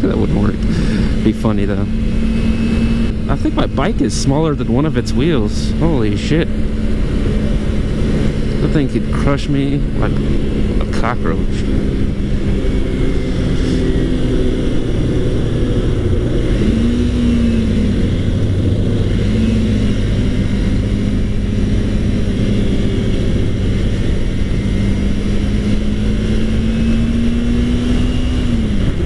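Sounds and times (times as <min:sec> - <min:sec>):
motorcycle engine running: 0:00.0 - 0:29.0
wind rush on microphone: 0:06.4 - 0:29.0.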